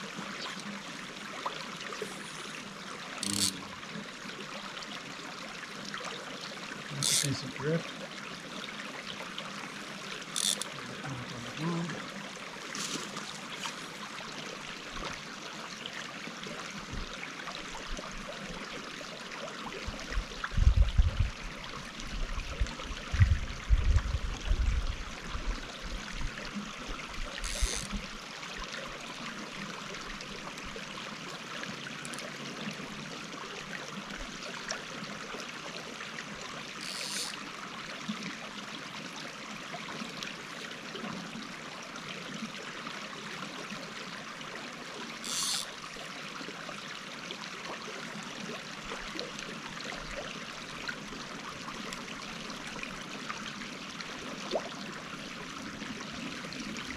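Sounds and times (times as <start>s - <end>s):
creek flowing: 0.0s - 20.2s, 25.1s - 56.9s
brief clicks or rustles: 3.2s - 3.6s, 12.7s - 13.8s, 27.5s - 28.0s, 36.8s - 37.4s, 45.2s - 45.7s.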